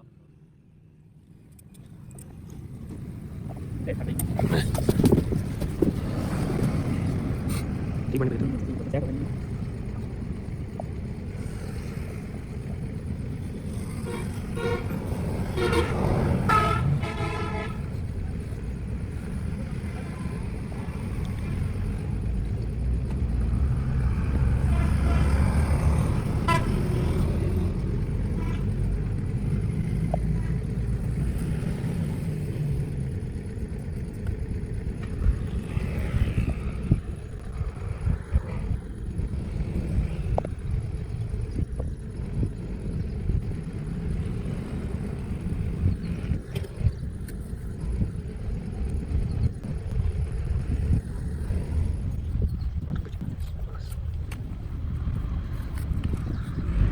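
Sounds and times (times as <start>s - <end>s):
road traffic rumble: 0.0s - 56.9s
vehicle horns honking: 13.8s - 18.0s, 24.5s - 27.2s.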